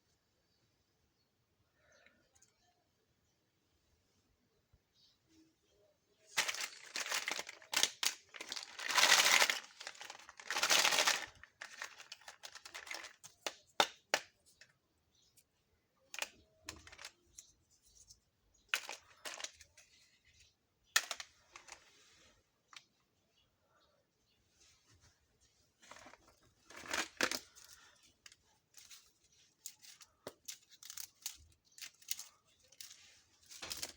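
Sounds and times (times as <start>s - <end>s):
plastic wrapping crinkling: 6.3s - 13.5s
plastic toy pieces clicking: 6.4s - 14.3s, 29.6s - 33.9s.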